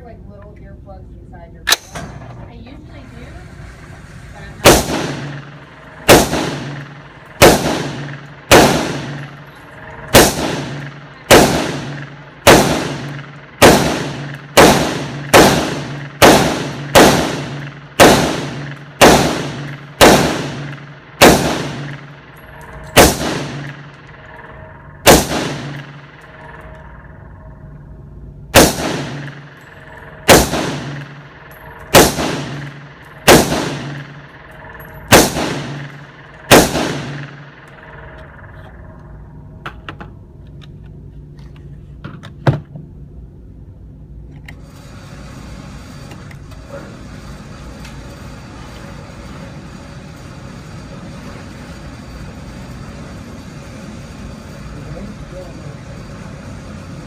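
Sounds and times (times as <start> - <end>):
firearm single shots with echo: 4.6 - 27.2, 28.5 - 38.8.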